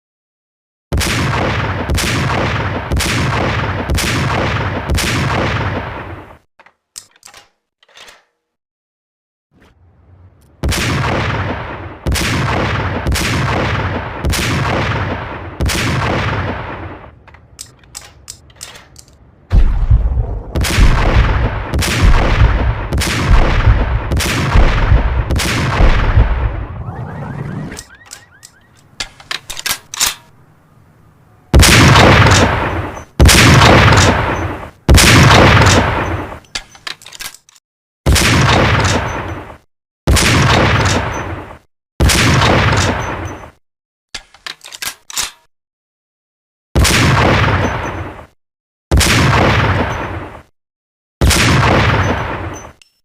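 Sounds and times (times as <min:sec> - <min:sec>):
rifle shots with echo: 0:00.9 - 0:06.2, 0:10.6 - 0:17.1, 0:19.6 - 0:27.3, 0:31.6 - 0:36.3, 0:46.8 - 0:48.0, 0:48.9 - 0:50.2
rifle bolt clicks: 0:06.6 - 0:08.4, 0:17.2 - 0:19.2, 0:27.8 - 0:30.3, 0:36.4 - 0:37.6, 0:44.2 - 0:45.5.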